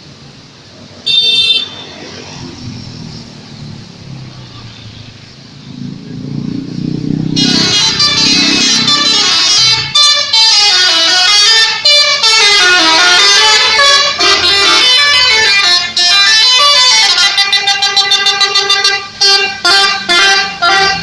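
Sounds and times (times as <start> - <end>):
multi-tone musical bus horn: 1.1 - 1.8, 7.3 - 21.0.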